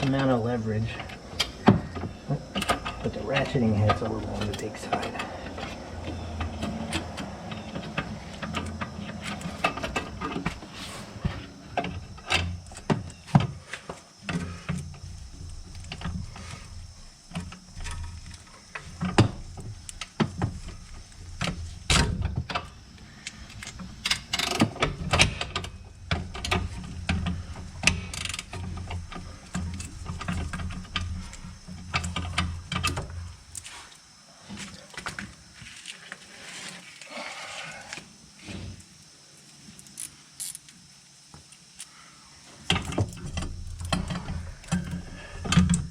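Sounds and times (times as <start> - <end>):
steady low hum: 0.0 - 35.8.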